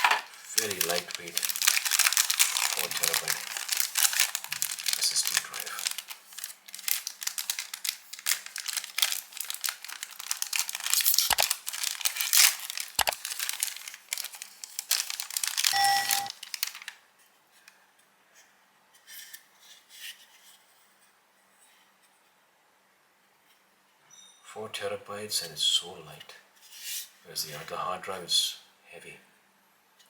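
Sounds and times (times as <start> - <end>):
plastic packaging crinkling and tearing: 0.0 - 17.0
brief pitched squeak: 24.1 - 24.5.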